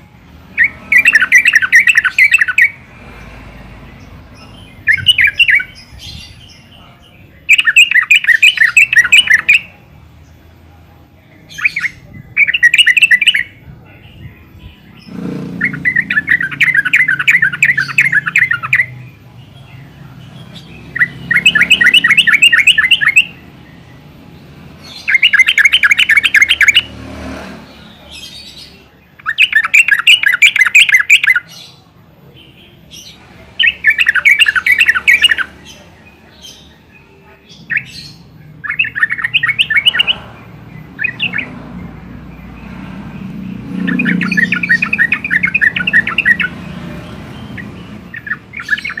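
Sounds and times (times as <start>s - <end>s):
bird chattering calls: 0.6s - 2.8s, 4.4s - 6.8s, 7.4s - 9.8s, 11.5s - 13.6s, 14.9s - 19.0s, 20.2s - 23.9s, 24.8s - 27.0s, 27.9s - 31.8s, 32.9s - 36.7s, 37.5s - 49.0s.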